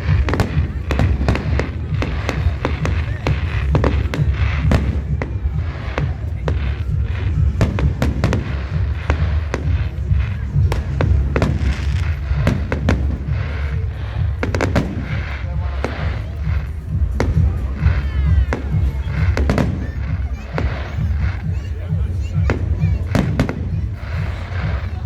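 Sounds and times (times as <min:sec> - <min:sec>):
fireworks bangs and crackles: 0:00.0 - 0:25.0
low rumble: 0:00.0 - 0:25.0.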